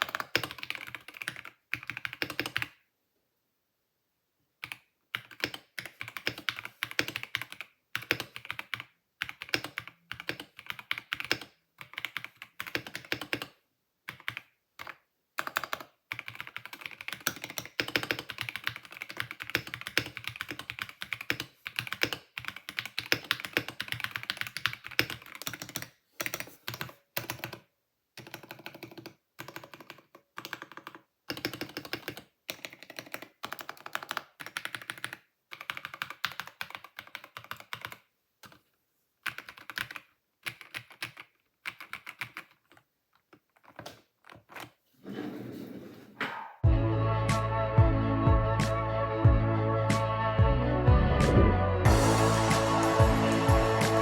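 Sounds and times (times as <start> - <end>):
mechanical keyboard typing: 0.0 - 2.8, 4.6 - 38.6, 39.2 - 44.8.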